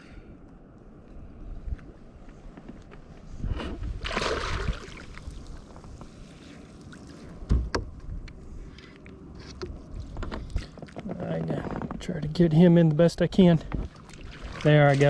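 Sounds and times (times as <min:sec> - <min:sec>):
water splashing against kayak: 0:03.8 - 0:07.4, 0:13.8 - 0:15.0.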